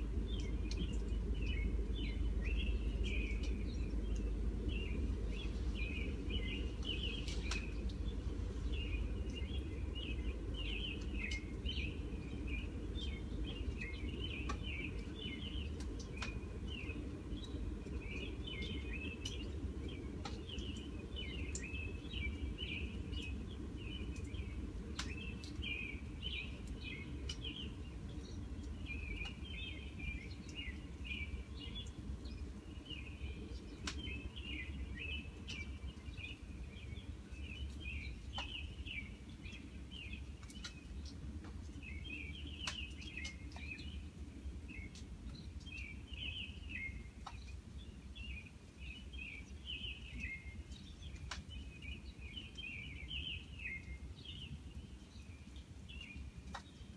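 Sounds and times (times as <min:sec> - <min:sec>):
small birds chirping: 0:00.0 - 0:56.9
faint sharp clicks: 0:00.3 - 0:01.6, 0:03.3 - 0:04.3, 0:06.8 - 0:08.1, 0:11.0 - 0:11.6, 0:13.7 - 0:15.1, 0:15.7 - 0:16.4, 0:17.5 - 0:19.5, 0:20.2 - 0:20.9, 0:21.5 - 0:21.7, 0:24.1 - 0:25.7, 0:26.6 - 0:27.5, 0:28.6 - 0:29.4, 0:33.6 - 0:34.1, 0:37.6 - 0:38.6, 0:40.4 - 0:41.8, 0:42.6 - 0:43.9, 0:47.2 - 0:47.6, 0:51.1 - 0:51.6, 0:56.4 - 0:56.7.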